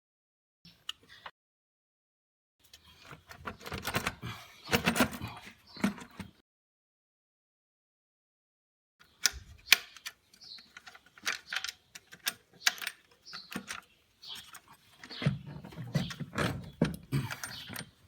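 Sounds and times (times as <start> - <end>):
metal tools clinking on engine parts: 16.1 - 18.0.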